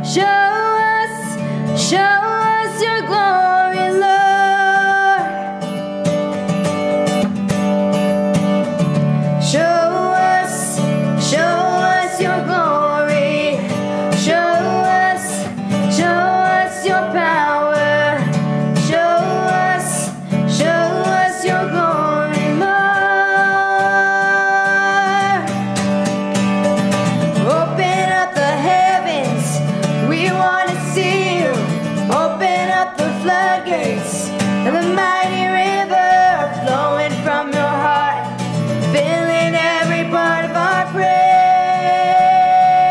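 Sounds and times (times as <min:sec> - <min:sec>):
person singing: 0:00.0 - 0:05.9, 0:09.3 - 0:25.9, 0:27.0 - 0:42.9
acoustic guitar: 0:00.0 - 0:42.9.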